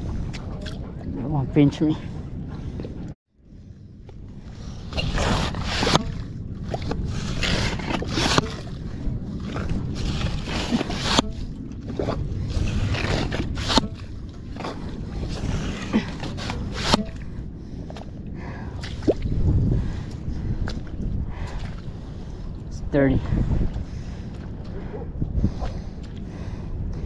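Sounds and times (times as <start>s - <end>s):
low rumble: 0.0s - 27.0s
bait pump sucking and scraping: 9.4s - 17.2s.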